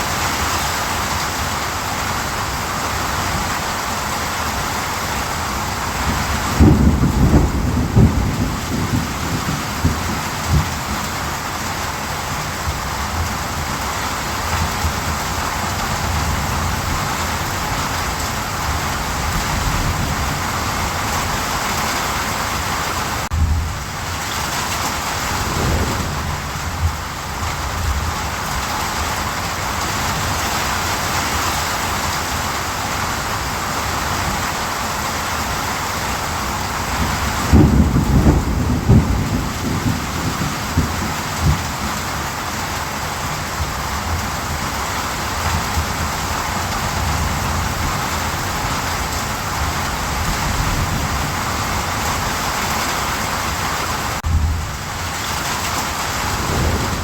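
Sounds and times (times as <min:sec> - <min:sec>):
heavy rain falling: 0:00.0 - 0:57.0
low rumble of thunder: 0:05.3 - 0:22.0, 0:23.2 - 0:31.1, 0:36.2 - 0:52.5, 0:54.2 - 0:57.0.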